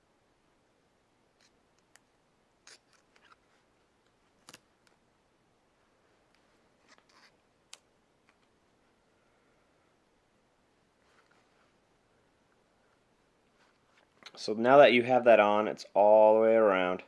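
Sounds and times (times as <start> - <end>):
vinyl skin clicks and crinkles: 1.4 - 5.0.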